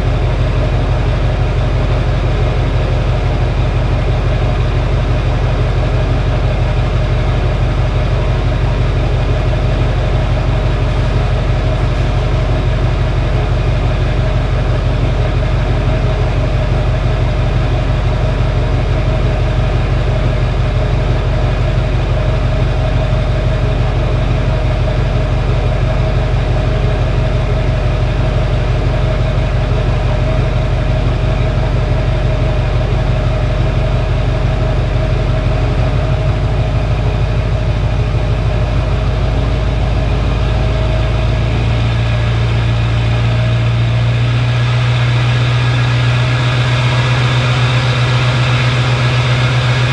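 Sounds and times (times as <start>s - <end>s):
diesel engine idling: 0.0s - 49.9s.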